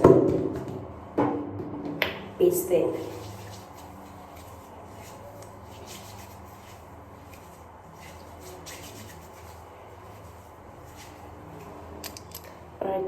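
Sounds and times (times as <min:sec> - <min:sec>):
hands rubbing on skin: 0:03.0 - 0:11.8.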